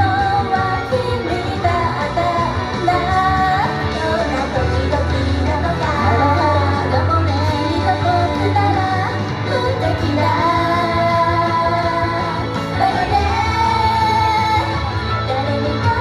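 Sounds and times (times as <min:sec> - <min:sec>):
instrumental backing with bass: 0:00.0 - 0:16.0
woman singing: 0:00.0 - 0:16.0.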